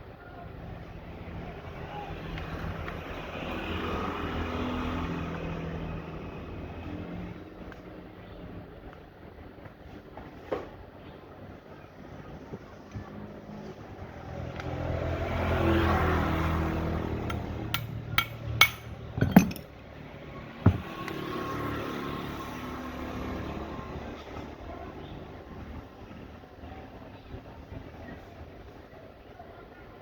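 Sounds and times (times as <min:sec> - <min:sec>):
sharp metallic clinks: 0:17.3 - 0:19.7
single knock: 0:20.7 - 0:20.9.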